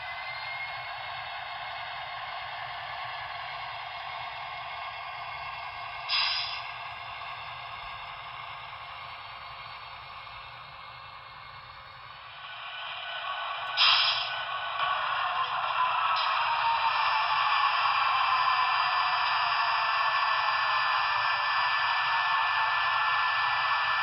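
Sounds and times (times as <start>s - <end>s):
sharp hiss of air: 6.1s - 6.6s, 13.8s - 14.4s
brake blowers rushing from small speaker: 13.6s - 18.1s.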